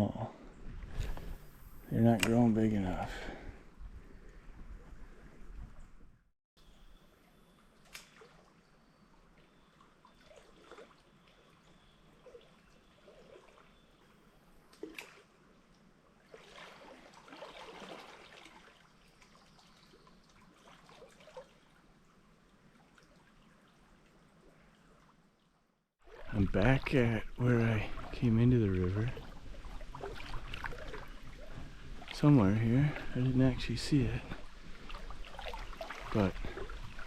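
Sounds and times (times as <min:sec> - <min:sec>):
stream trickling: 0:06.6 - 0:37.0.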